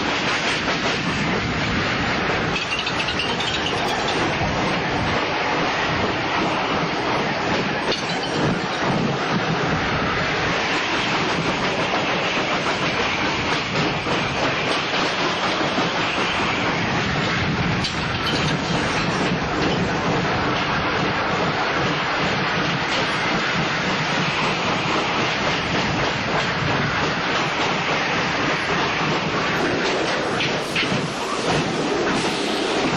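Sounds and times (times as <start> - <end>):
roller coaster wheels rattling on rails: 0.0 - 32.9.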